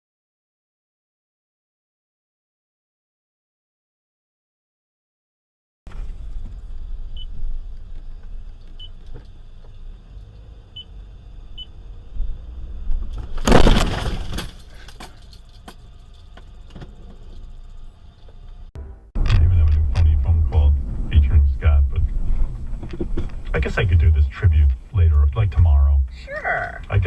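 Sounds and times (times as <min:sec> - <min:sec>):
road and engine rumble: 0:05.9 - 0:27.0
loud crash impact: 0:13.4 - 0:14.7
sharp clinks and knocks: 0:14.3 - 0:17.6.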